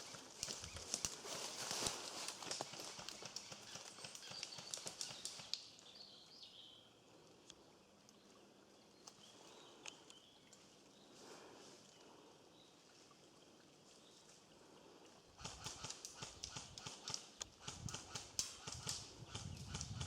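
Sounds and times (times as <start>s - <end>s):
footsteps crunching dry leaves: 0.0s - 3.1s.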